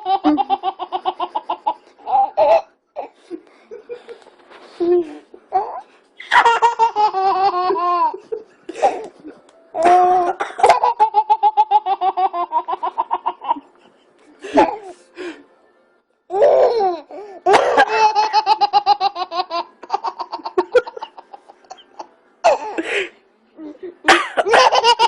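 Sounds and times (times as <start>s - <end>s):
baby laughing: 0.0s - 3.1s, 5.5s - 9.1s, 9.8s - 13.7s, 16.3s - 22.7s, 24.3s - 25.0s
coughs: 10.3s - 10.8s, 17.5s - 17.9s, 24.1s - 24.7s.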